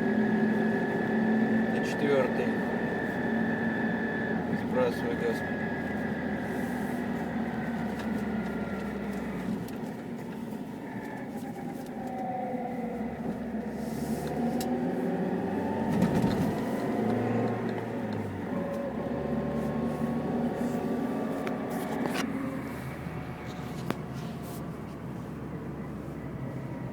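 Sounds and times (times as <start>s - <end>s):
car running noise with howl: 0.0s - 26.9s.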